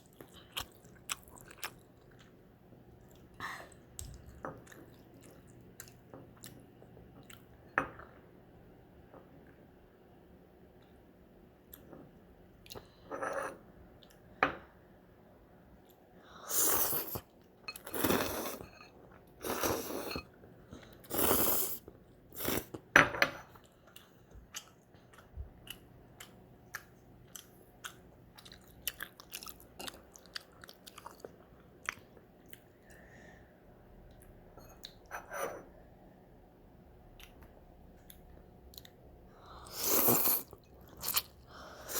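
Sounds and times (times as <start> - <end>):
noodles being slurped: 16.5 - 18.8, 21.0 - 22.8, 39.6 - 41.3.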